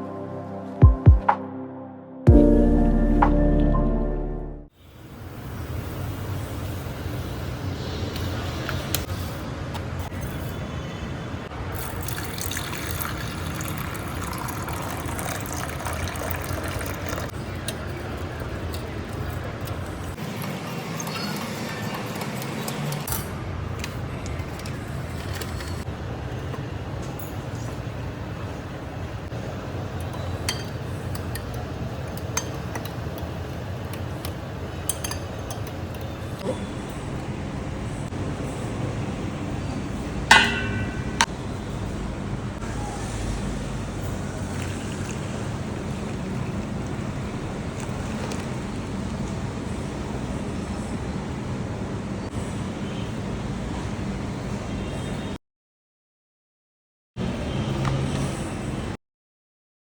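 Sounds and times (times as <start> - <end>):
water running: 11.8 - 21.0, 44.3 - 48.6
utensil clinking against dish: 34.9 - 36.2.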